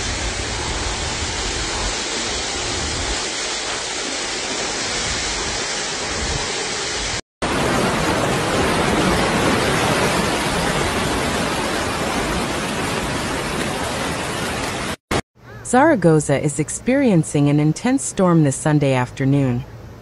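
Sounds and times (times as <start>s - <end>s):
torrential rain and rushing water: 0.0s - 15.2s.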